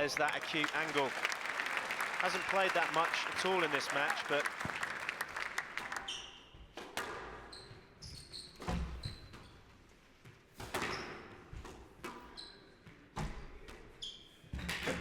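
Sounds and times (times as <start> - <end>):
applause: 0.0 - 6.1
shoes squeaking on court floor: 6.0 - 13.3
squash ball smacking rackets and walls: 6.7 - 7.5, 10.2 - 12.4.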